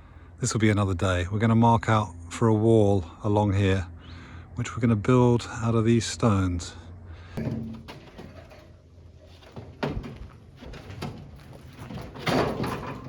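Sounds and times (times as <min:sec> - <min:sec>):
knocks and thuds: 0:07.4 - 0:13.0.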